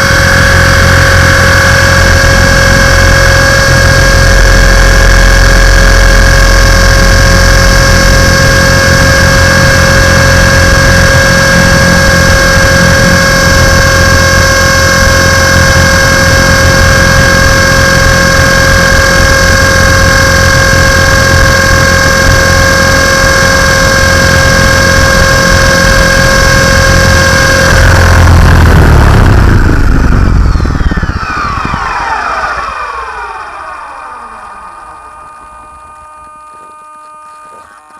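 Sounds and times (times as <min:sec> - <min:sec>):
electric motor whine: 0:00.0 - 0:37.9
rotors buzzing: 0:25.2 - 0:37.9.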